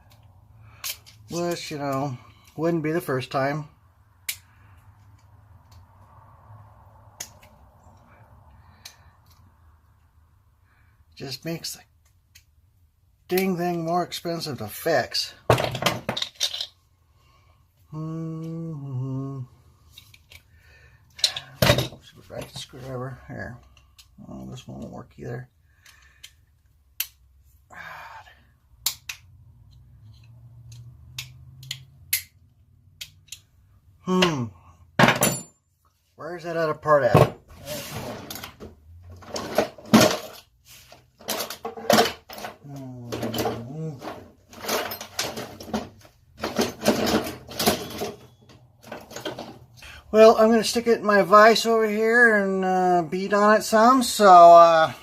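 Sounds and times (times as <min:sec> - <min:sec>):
scraping rustle: 0:37.5 - 0:38.6.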